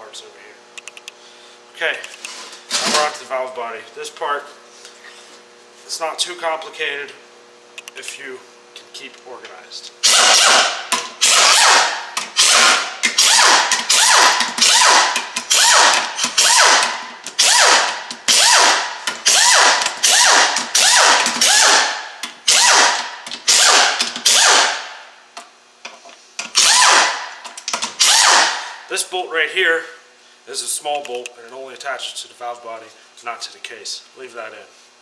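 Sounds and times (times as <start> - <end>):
power ratchet bursts: 10.0 - 25.0, 26.5 - 28.8.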